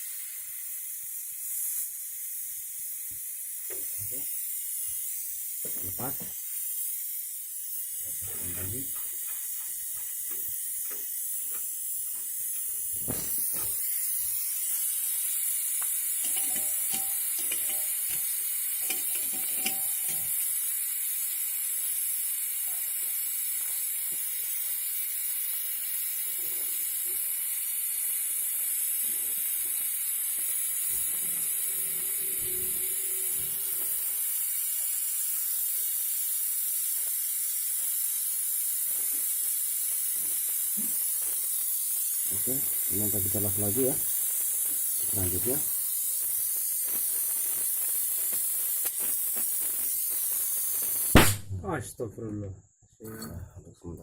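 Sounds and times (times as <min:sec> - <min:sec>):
high-pitched gas hiss: 0:00.0 - 0:52.0.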